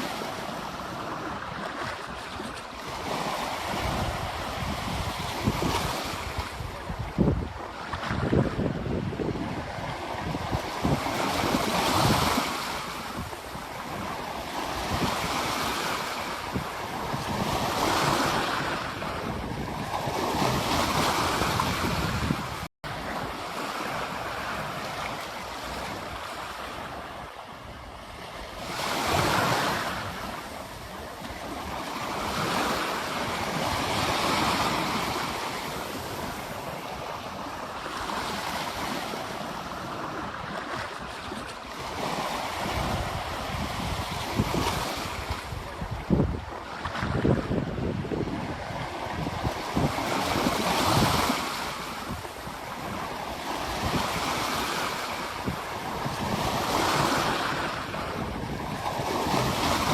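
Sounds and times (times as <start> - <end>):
ocean waves breaking: 0.0 - 59.9.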